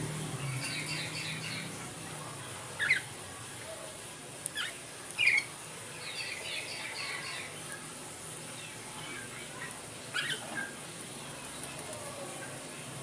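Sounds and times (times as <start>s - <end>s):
bird chattering: 2.8s - 3.0s, 10.1s - 10.8s.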